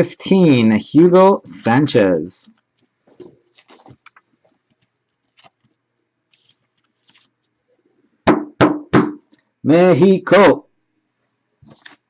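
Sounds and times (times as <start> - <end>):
trading cards clicking and rustling: 2.7 - 7.6, 11.1 - 12.0.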